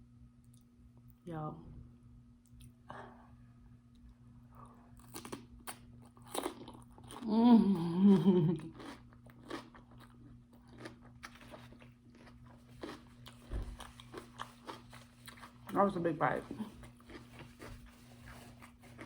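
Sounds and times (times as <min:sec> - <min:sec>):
crunching and wet chewing: 0:03.9 - 0:07.3, 0:08.6 - 0:15.8, 0:16.6 - 0:19.0
person humming mmm: 0:07.2 - 0:08.6.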